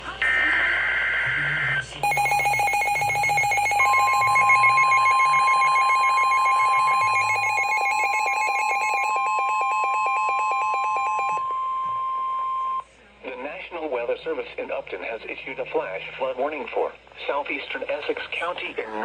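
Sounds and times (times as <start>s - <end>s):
fast-pulsing buzzy alarm tone: 0.2s - 11.4s
steady high tone: 0.2s - 12.9s.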